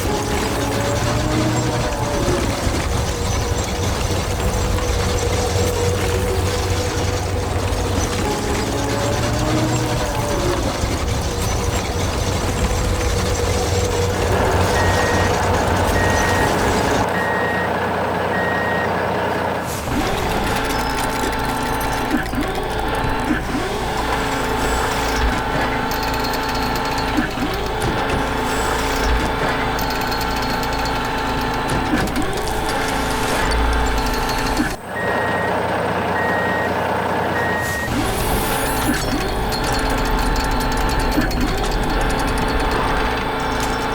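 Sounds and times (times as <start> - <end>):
engine running steadily: 0.0 - 18.8, 19.6 - 43.9
reversing alarm beeping: 11.5 - 19.0, 28.5 - 43.9.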